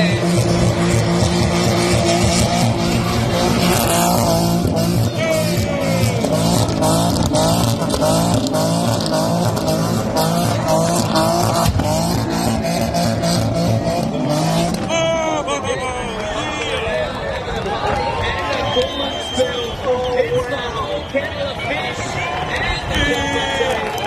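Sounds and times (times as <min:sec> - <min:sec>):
car engine revving hard: 0:00.0 - 0:14.9.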